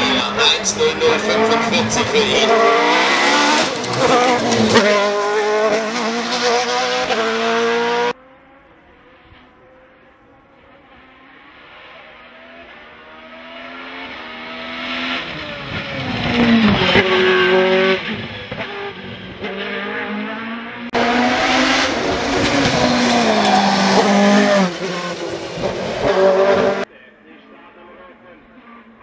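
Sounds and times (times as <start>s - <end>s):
race car engine at high revs: 0.0s - 26.9s.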